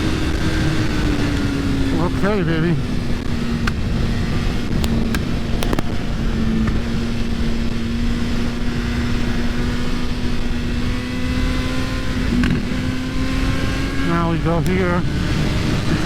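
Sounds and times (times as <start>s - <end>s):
motorcycle engine at high revs: 0.0s - 16.0s
wind rush over microphone: 0.0s - 16.0s
sharp clicks: 4.8s - 5.9s.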